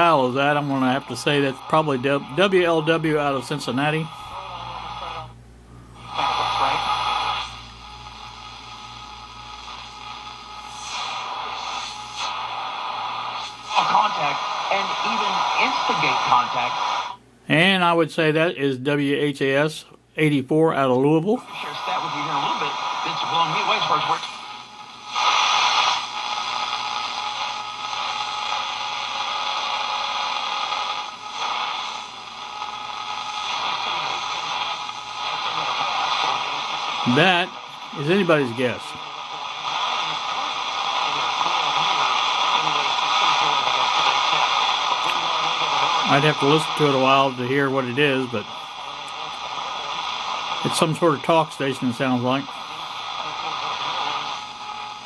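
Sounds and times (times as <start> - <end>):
radio static and hiss: 0.0 - 55.0.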